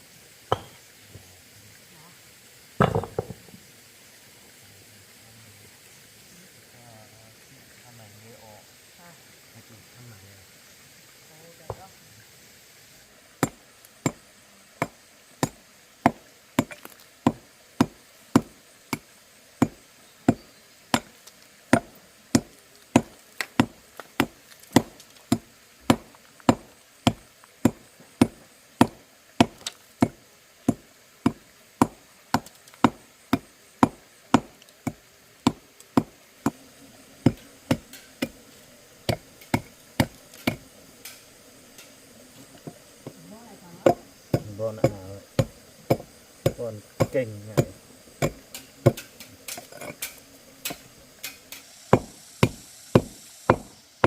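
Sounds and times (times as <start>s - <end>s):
knife chopping on wooden board: 0.5s - 0.8s, 21.7s - 36.6s, 39.1s - 40.6s, 43.8s - 49.1s, 51.9s - 53.7s.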